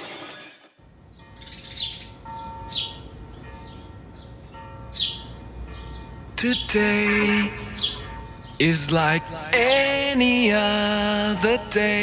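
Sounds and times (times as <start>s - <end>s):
falling bird-like chirps: 7.6s - 9.9s.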